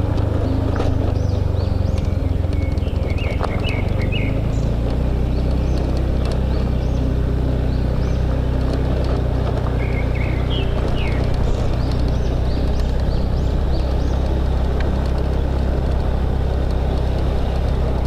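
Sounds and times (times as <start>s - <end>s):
birds chirping: 0.0s - 18.0s
motorbike engine running: 0.0s - 18.0s
wind and road noise: 0.0s - 18.0s.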